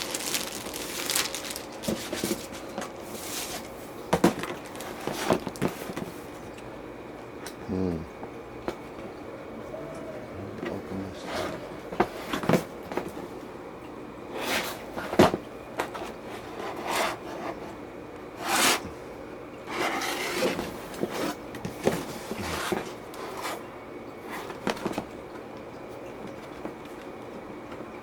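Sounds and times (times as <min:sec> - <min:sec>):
laptop packaging rustling: 0:00.0 - 0:06.1.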